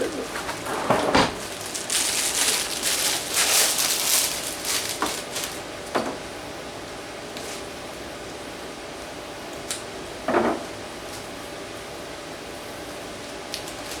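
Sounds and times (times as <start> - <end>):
rustling and knocks of rummaging: 0.0 - 6.2.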